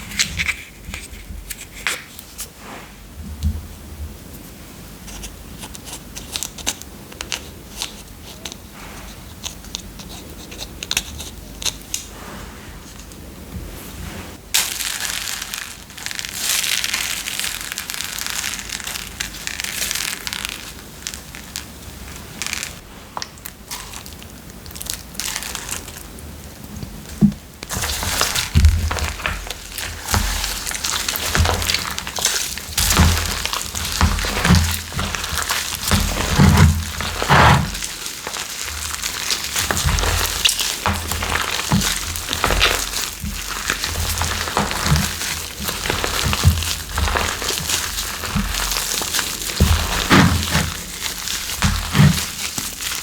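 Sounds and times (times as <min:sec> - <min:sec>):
slime crunching and crackling: 0:14.4 - 0:53.0.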